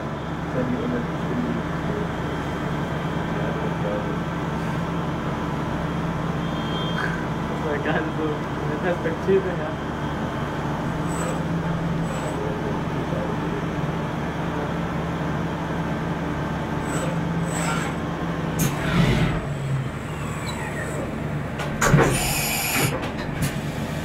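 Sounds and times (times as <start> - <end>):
machining centre humming: 0.0 - 24.0
high squeaks: 20.0 - 21.0.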